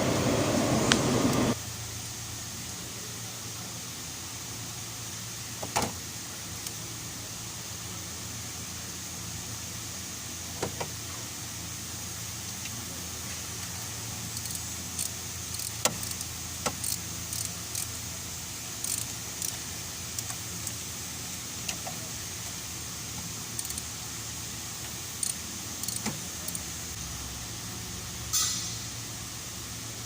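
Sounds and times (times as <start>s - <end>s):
steady low hum: 0.0s - 5.5s
hissing rattle: 14.3s - 18.1s, 18.7s - 20.8s.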